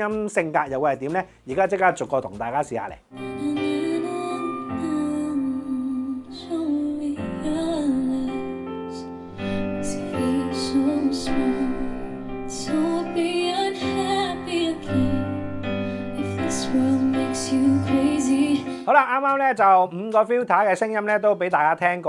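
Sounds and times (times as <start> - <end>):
woman singing with accompaniment: 3.2 - 18.9.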